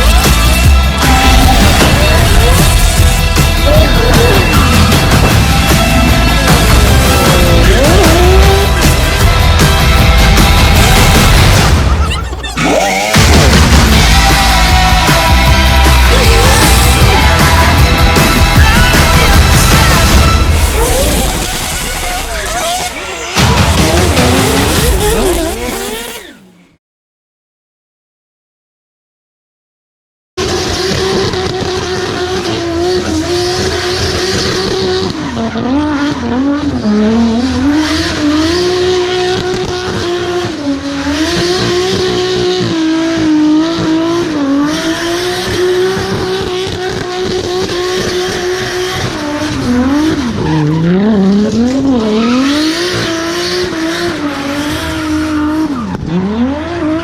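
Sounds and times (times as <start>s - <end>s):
car engine revving high: 0.0s - 26.8s, 30.4s - 57.0s
tyres squealing: 0.0s - 26.8s.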